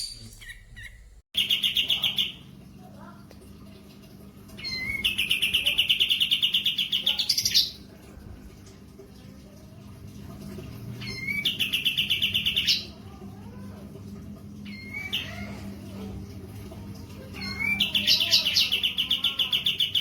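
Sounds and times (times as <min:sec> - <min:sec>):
bird trilling: 0:00.0 - 0:02.4.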